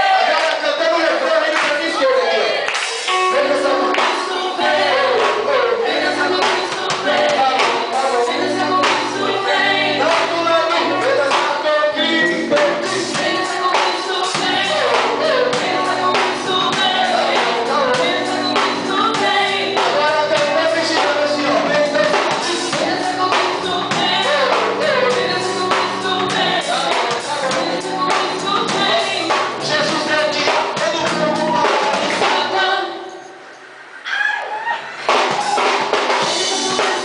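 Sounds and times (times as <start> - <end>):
voices singing: 0.0 - 37.0
drum beat: 12.2 - 32.5, 35.1 - 37.0.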